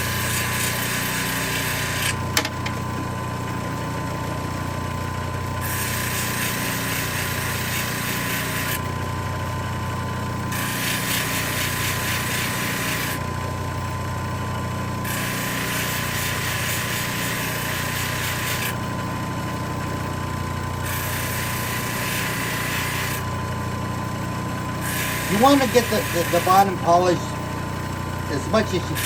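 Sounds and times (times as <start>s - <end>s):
machine motor running: 0.0s - 29.0s
grinding hiss on wet wheel: 20.8s - 23.2s, 24.8s - 26.7s.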